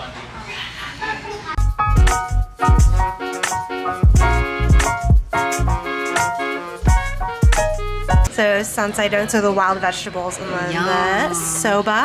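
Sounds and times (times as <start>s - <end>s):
background music with bass beat: 1.6s - 8.3s.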